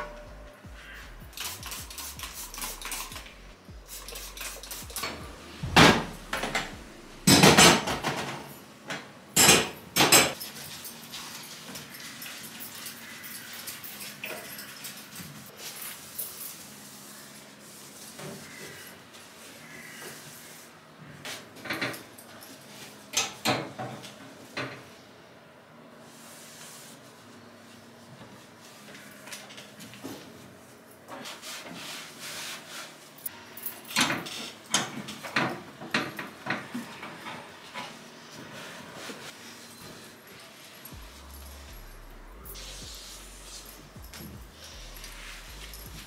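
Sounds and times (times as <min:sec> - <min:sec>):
kitchen knocks and clatters: 0:05.0 - 0:10.7.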